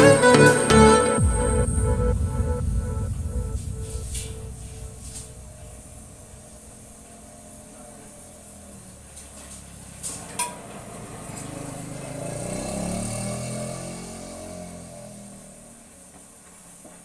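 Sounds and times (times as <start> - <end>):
motor hum: 1.2 - 10.0.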